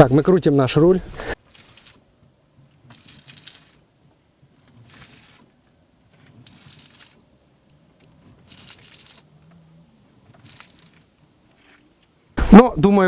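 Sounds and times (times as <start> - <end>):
tyre scrubbing on ground: 0.0 - 2.0
coil spring rubbing on plastic: 0.9 - 7.4, 8.0 - 9.6, 10.2 - 12.1.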